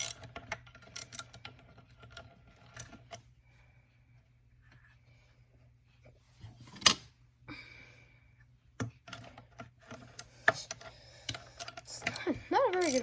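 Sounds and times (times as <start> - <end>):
tools clicking against chainsaw: 12.0 - 13.0.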